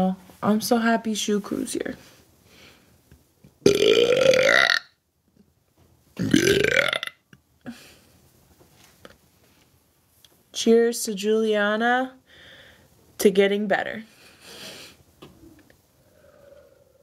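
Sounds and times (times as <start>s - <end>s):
person burping loudly: 3.6s - 5.0s, 6.2s - 7.2s.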